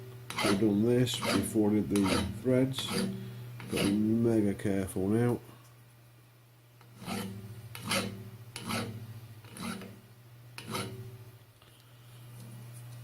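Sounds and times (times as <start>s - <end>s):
lathe tool rasping scrapes: 0.3s - 4.2s, 6.9s - 10.0s, 10.6s - 11.0s.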